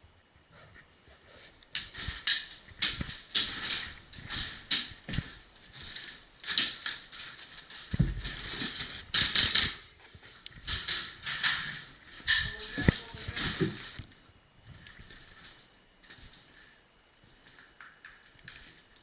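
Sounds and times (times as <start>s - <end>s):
crunching footsteps: 1.3s - 19.0s
gear clattering: 1.7s - 14.2s
dull thumps: 7.9s - 9.0s.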